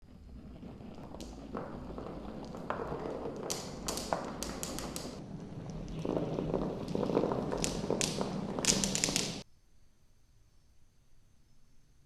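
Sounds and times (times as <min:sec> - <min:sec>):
marbles rolling on track: 0:00.0 - 0:09.4
marble clicks: 0:00.2 - 0:09.4.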